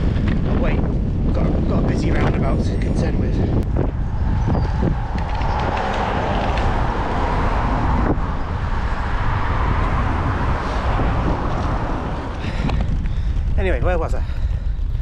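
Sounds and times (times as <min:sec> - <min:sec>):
wind on microphone: 0:00.0 - 0:15.0
motor traffic passing: 0:03.4 - 0:13.5.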